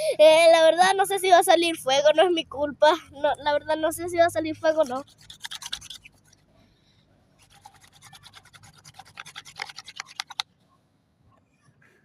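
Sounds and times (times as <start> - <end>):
wooden stick scraping: 4.8 - 6.4, 7.4 - 10.5.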